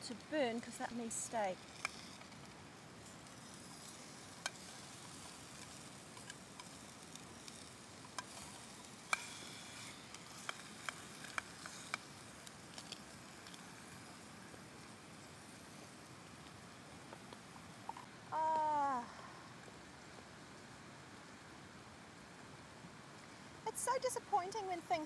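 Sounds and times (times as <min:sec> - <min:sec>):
food sizzling in a pan: 0:00.6 - 0:16.0.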